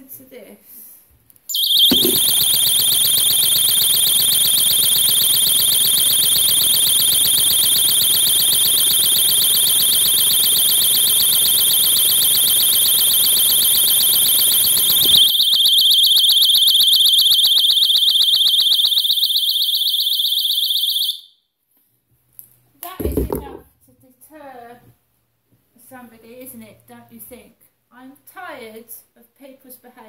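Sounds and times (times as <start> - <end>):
personal alarm screeching: 1.5 - 21.3.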